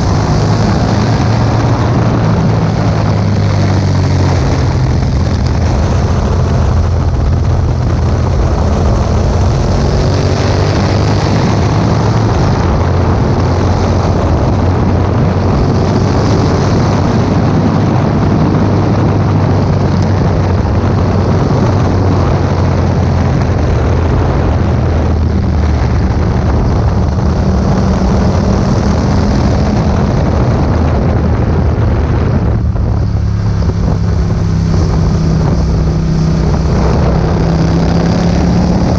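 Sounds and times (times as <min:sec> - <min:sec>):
motorcycle engine running: 0:00.0 - 0:38.9
wind noise on microphone: 0:00.0 - 0:38.9.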